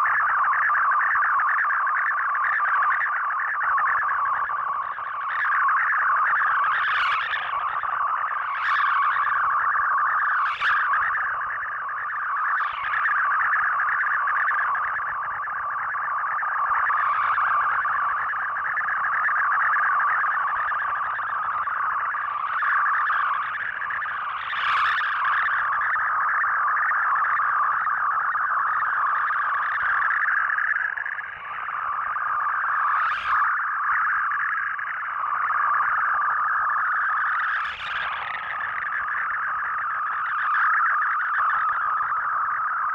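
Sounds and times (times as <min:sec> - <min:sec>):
static crackles: 0:00.0 - 0:42.9
warbling radio data tones: 0:00.0 - 0:42.9.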